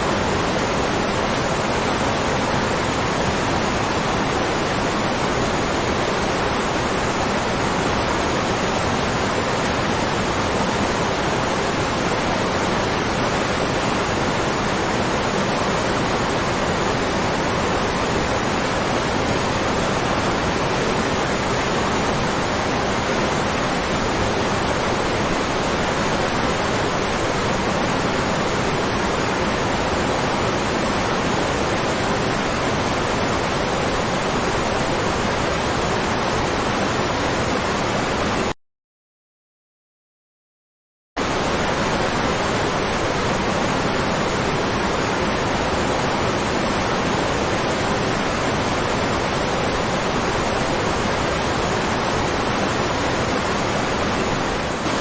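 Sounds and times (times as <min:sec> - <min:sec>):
waterfall roaring: 0:00.0 - 0:38.5, 0:41.2 - 0:55.0.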